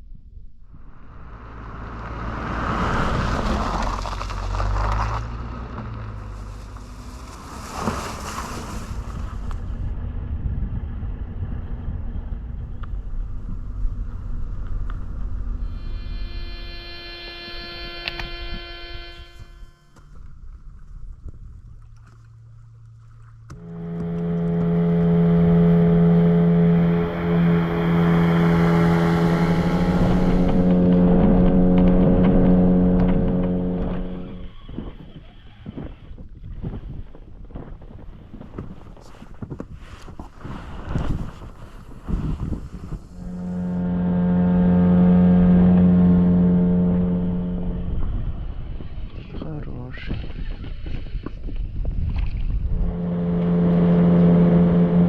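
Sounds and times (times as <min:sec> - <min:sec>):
motorboat engine hum: 0:00.3 - 0:55.0
rushing wind: 0:06.2 - 0:16.3, 0:25.3 - 0:55.0
click: 0:18.0 - 0:18.4.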